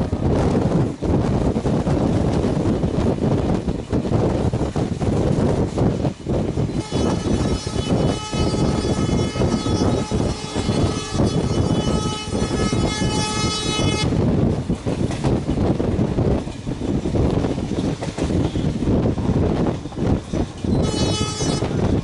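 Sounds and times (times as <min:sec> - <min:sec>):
train rumbling and clattering on rails: 0:00.0 - 0:22.0
locomotive horn long blast: 0:06.8 - 0:14.1, 0:20.8 - 0:21.8.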